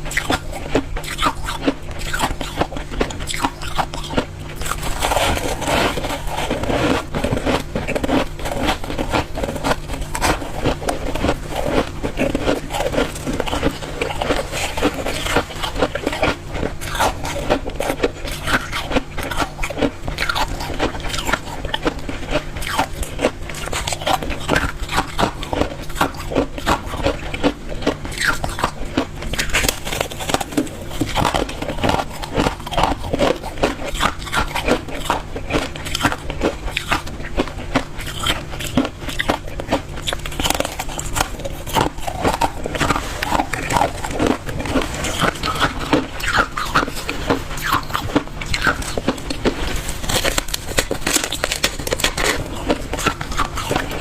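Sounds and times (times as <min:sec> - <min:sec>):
crunching ice: 0:00.0 - 0:54.0
faint steady hum: 0:00.0 - 0:54.0.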